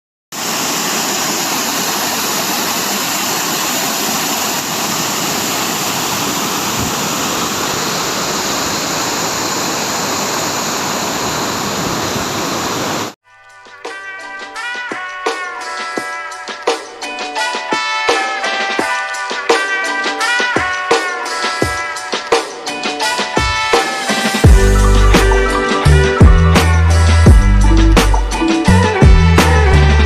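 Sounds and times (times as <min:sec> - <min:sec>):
waterfall rushing: 0:00.3 - 0:13.2
music with drum hits: 0:13.6 - 0:30.0.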